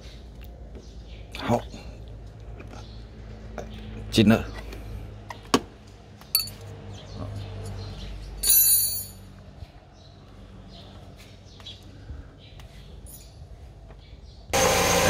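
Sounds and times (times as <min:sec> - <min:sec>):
hand tool clinking against metal: 0:06.3 - 0:06.6, 0:08.4 - 0:09.2.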